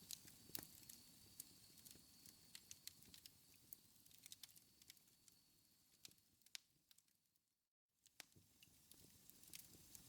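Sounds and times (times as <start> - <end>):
fire pops: 0.0 - 3.3
wood fire crackling: 0.0 - 7.4, 8.0 - 10.0.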